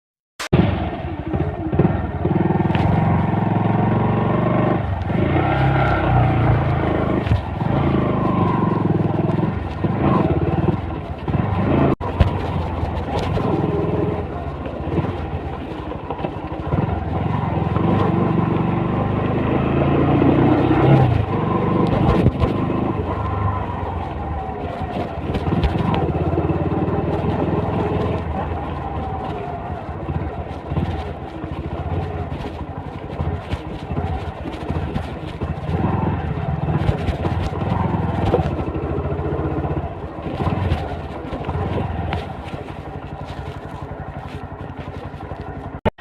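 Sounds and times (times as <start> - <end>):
motorcycle engine revving: 0.4 - 46.0.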